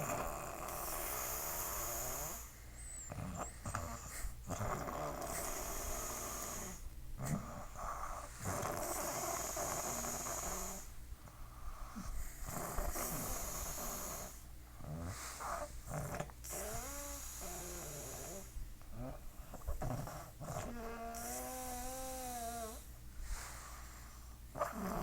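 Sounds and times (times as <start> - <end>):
snoring: 0.0 - 11.0, 11.8 - 23.6, 24.5 - 25.0.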